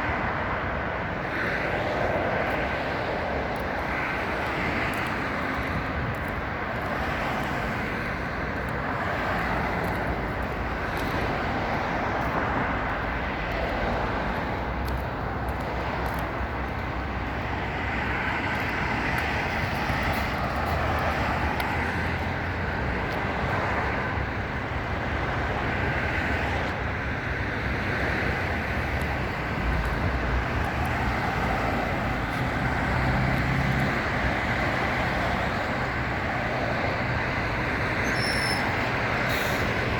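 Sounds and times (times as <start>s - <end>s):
road traffic rumble: 0.0s - 39.9s.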